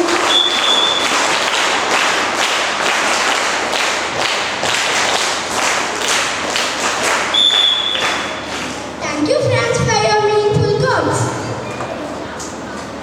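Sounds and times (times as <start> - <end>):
crowd making rhythmic thuds: 0.0 - 9.0
high whistle note: 0.2 - 1.1, 7.3 - 8.5.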